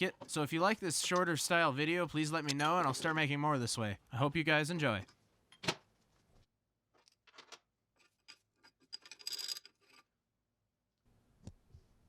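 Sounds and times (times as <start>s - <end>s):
metal tools clicking and tapping: 2.4s - 3.1s
tools scraping metal: 2.4s - 3.2s.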